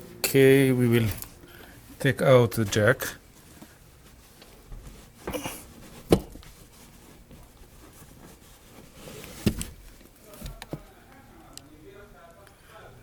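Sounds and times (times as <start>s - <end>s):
short rustle: 1.0s - 10.6s.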